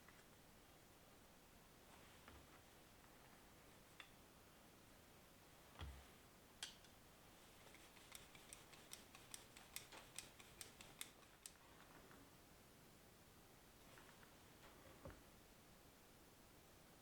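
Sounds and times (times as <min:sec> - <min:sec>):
small sharp clicks: 0:07.7 - 0:11.6.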